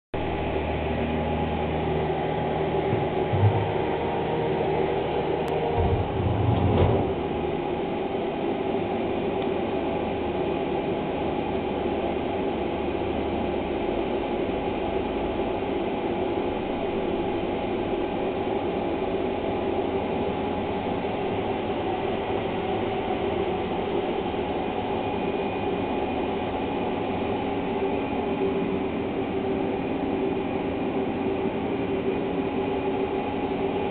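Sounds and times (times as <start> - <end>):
heavy low rumble: 0.2 - 8.0
mechanical running hum: 0.2 - 33.9
knock: 3.0 - 3.7.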